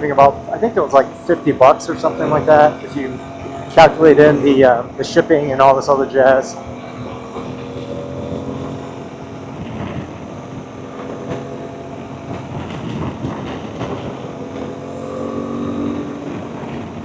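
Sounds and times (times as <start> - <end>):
motorcycle engine running: 0.0 - 17.0
wind noise on microphone: 7.4 - 14.9, 15.5 - 17.0.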